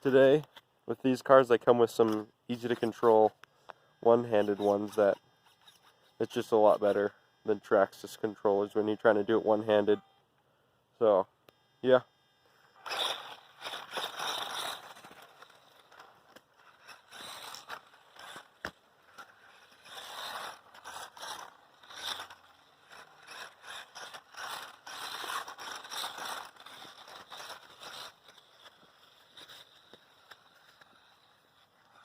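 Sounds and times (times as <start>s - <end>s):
toy truck motor whirring: 0.1s - 10.2s, 11.5s - 32.0s
tires scraping on dirt: 12.8s - 32.0s.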